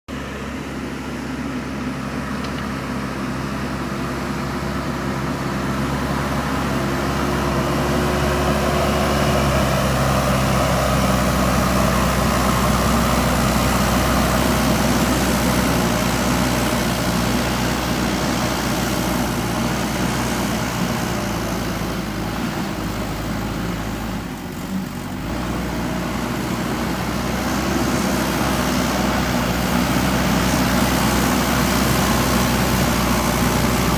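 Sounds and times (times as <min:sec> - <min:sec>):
diesel engine running under load: 0:00.1 - 0:33.9.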